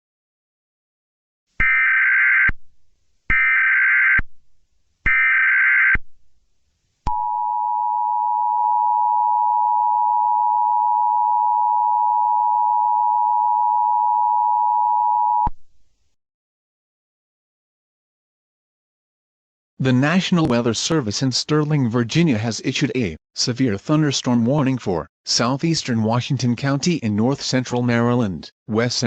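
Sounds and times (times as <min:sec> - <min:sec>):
steady attention tone: 0:07.1 - 0:15.5.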